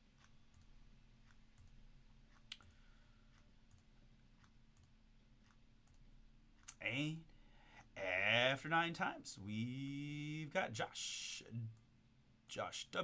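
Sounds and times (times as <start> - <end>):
computer mouse clicking: 0.2 - 6.8.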